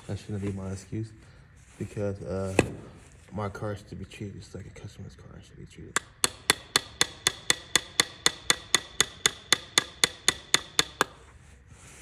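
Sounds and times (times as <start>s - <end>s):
hammer tapping on metal: 6.0s - 11.2s.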